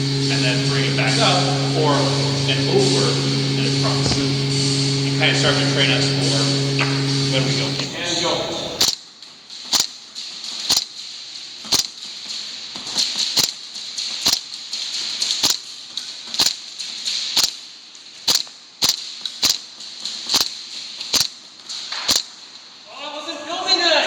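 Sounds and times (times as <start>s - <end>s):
airsoft gun shots: 8.8s - 9.0s, 9.7s - 10.0s, 10.6s - 12.1s, 12.9s - 14.6s, 15.3s - 15.8s, 16.4s - 16.7s, 17.3s - 17.6s, 18.2s - 22.5s.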